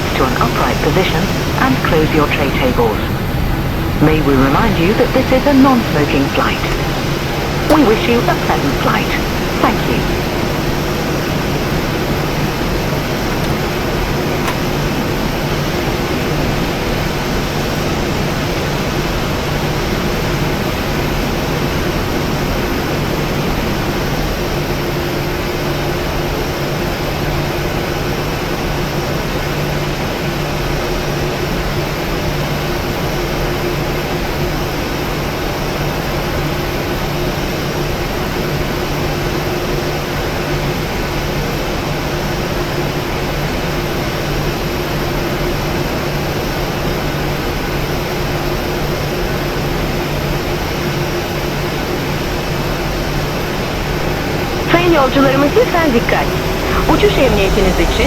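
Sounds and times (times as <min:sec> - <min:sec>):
low steady hum: 0:00.0 - 0:11.0, 0:53.8 - 0:58.0.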